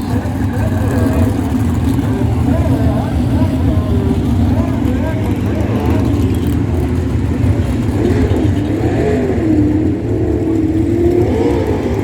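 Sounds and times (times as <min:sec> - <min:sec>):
racing car engines: 0:00.0 - 0:12.0.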